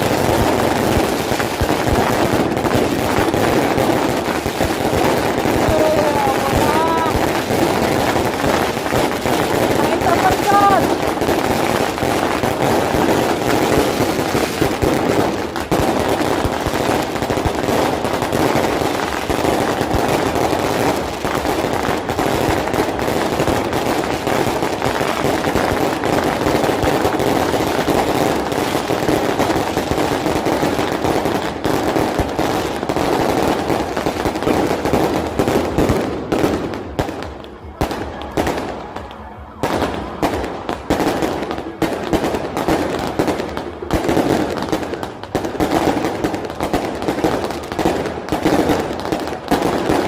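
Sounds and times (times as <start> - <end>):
fireworks bangs and crackles: 0.0 - 50.0.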